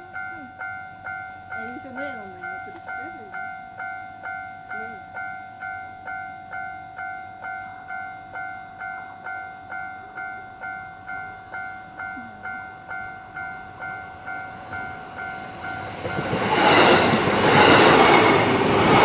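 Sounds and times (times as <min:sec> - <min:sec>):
level-crossing warning bell: 0:00.0 - 0:19.0
train rumble: 0:10.0 - 0:19.0.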